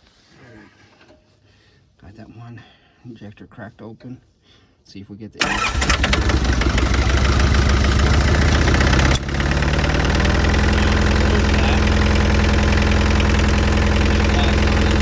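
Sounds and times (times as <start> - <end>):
diesel engine running with rapid chatter: 5.4 - 15.0.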